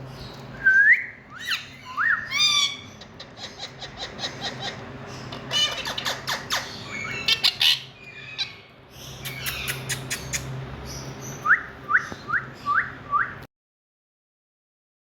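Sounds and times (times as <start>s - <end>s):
parakeet squawking and chirping: 1.4s - 13.0s.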